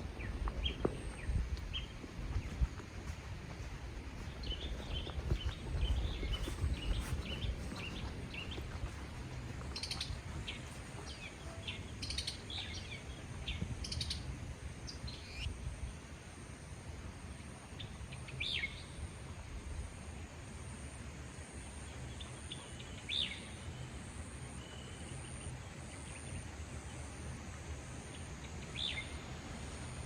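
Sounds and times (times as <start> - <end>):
low rumbling background noise: 0.0 - 30.0
small birds chirping: 0.2 - 14.2.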